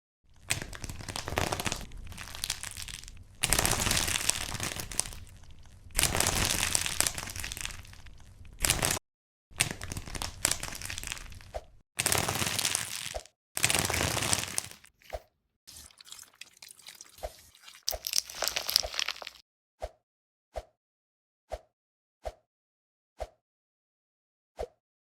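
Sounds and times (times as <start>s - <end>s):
soft material squishing and crunching: 0.3s - 9.0s, 9.6s - 19.4s.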